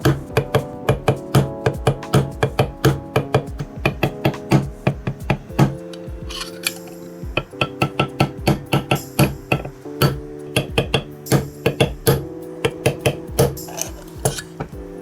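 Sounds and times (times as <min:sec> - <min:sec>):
music with sustained chords: 0:00.0 - 0:15.0.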